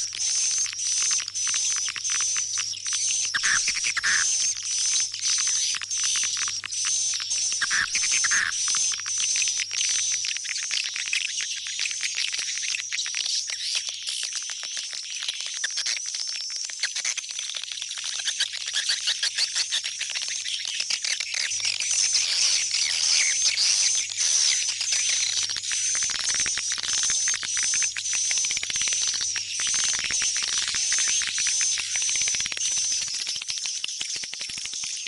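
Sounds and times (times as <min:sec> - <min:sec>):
swiftlets twittering chirps: 0:00.0 - 0:10.2
repeated bird chirp: 0:00.0 - 0:14.0, 0:18.1 - 0:35.0.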